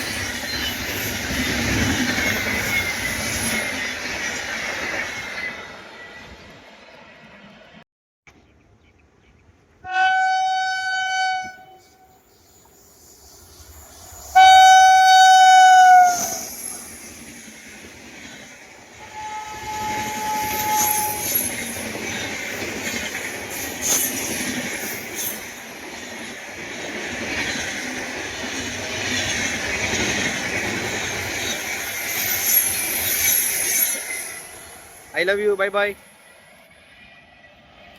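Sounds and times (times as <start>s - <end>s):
train horn blasts: 9.8s - 12.2s, 14.4s - 16.5s, 19.0s - 21.5s
train passing rumble: 11.4s - 37.9s.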